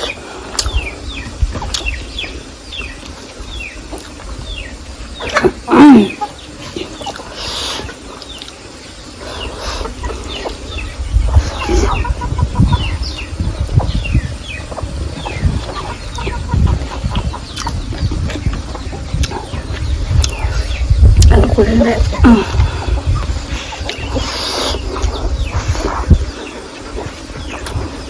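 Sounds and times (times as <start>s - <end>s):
chickens clucking: 0.0s - 28.0s
small birds chirping: 0.0s - 28.0s
chicken squawk: 11.3s - 13.0s.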